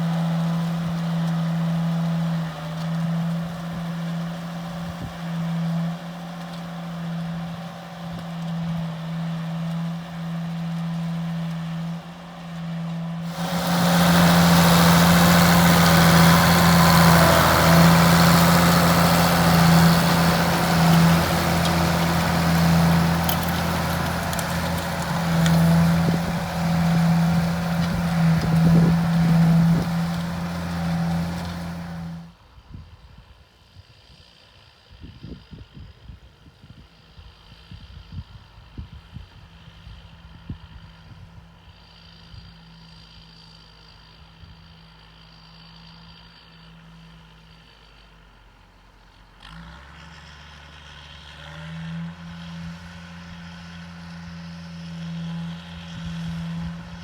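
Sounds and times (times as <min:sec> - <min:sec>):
tractor diesel engine running: 0:00.0 - 0:32.4, 0:52.0 - 0:57.0.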